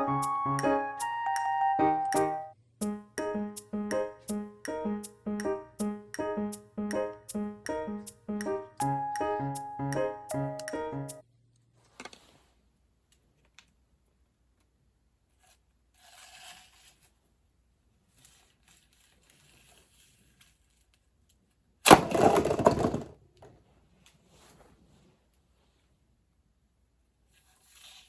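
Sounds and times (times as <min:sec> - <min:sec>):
clattering: 0:21.9 - 0:23.2.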